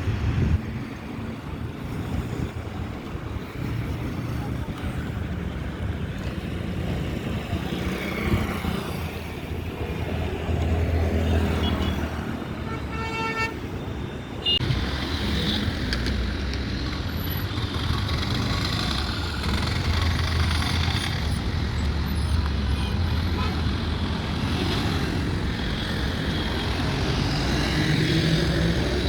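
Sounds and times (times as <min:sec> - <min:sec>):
highway traffic rumbling: 0:00.0 - 0:29.0
vehicle horn: 0:11.6 - 0:13.6.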